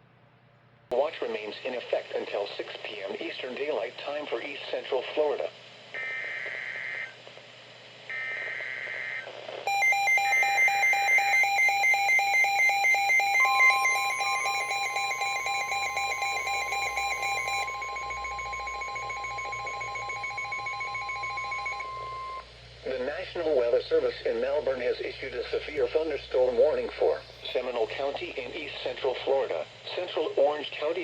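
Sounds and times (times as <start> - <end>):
warbling data bursts: 9.7 - 21.9
pulsing alert beep: 9.7 - 22.4
steady warning alarm tone: 9.7 - 22.5.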